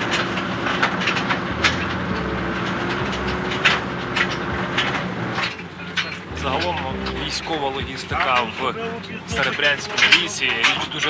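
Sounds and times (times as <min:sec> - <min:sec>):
truck body clanking and rattling: 0:00.0 - 0:06.9
truck engine running: 0:00.0 - 0:11.0.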